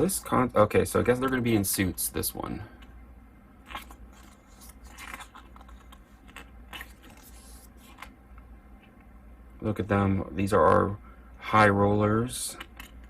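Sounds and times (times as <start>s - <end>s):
pages rustling: 3.6s - 8.2s.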